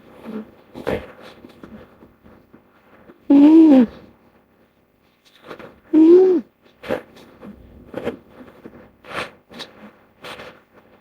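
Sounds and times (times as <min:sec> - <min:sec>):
short animal call dipping in pitch: 0:06.0 - 0:06.4.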